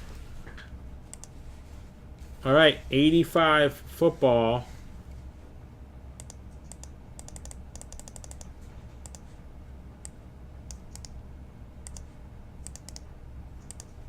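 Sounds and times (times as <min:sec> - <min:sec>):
low hum: 0:00.0 - 0:14.0
keyboard typing clicks: 0:01.1 - 0:01.4, 0:06.2 - 0:09.3, 0:10.0 - 0:11.2, 0:11.8 - 0:14.0.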